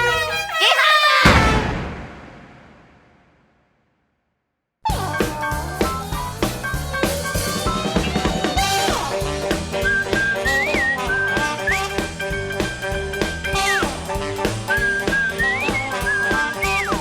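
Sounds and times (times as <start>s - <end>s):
upbeat cartoon music: 0.0s - 1.7s, 4.9s - 17.0s
whistle glides: 7.1s - 12.5s, 14.7s - 17.0s.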